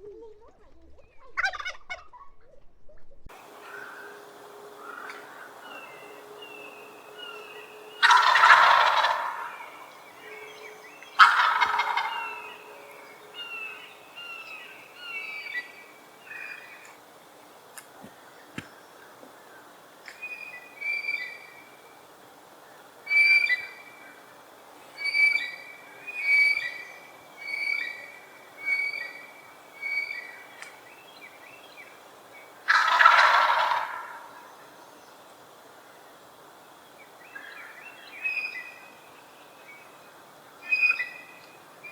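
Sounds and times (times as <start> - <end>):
turkey gobbling: 1.3 - 2.2, 3.4 - 17.0, 26.2 - 26.8, 32.6 - 34.5
short high turkey calls: 3.3 - 17.0, 24.9 - 26.8, 27.4 - 30.8, 32.6 - 34.5.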